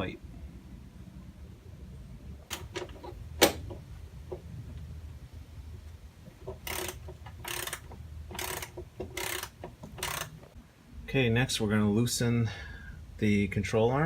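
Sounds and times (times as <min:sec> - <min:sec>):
hand tools clicking and knocking: 0:02.5 - 0:04.5, 0:06.3 - 0:10.5
ratchet wrench ratcheting: 0:06.4 - 0:10.5.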